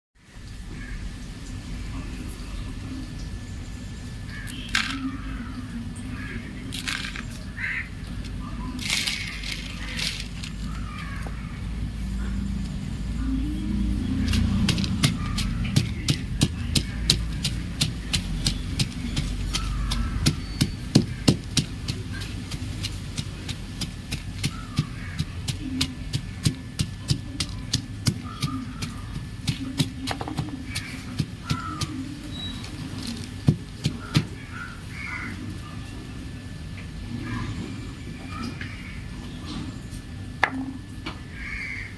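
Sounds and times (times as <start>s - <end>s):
low background rumble: 0.3s - 41.9s
chalk crunching: 6.7s - 34.8s.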